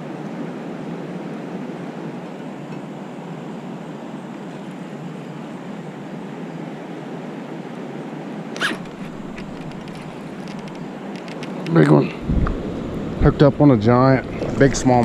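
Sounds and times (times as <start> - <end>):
rushing outdoor background noise: 0.0 - 15.0
sharp zipping sound: 8.6 - 10.1.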